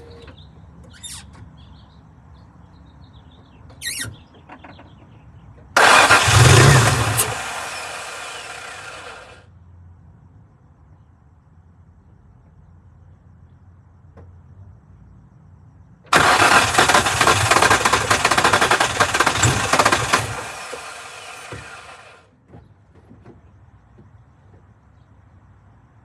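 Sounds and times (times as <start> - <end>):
car starter motor cranking: 5.8 - 9.4, 16.1 - 22.2.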